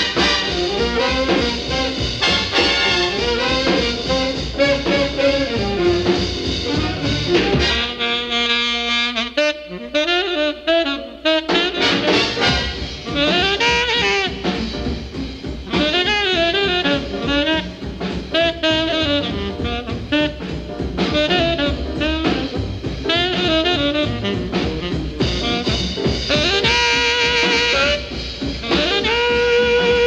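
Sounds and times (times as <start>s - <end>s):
horns sustained chord: 0.0s - 8.6s
rhythm section with drums: 0.0s - 8.9s, 11.4s - 30.0s
saxophone playing fast melody: 0.0s - 30.0s.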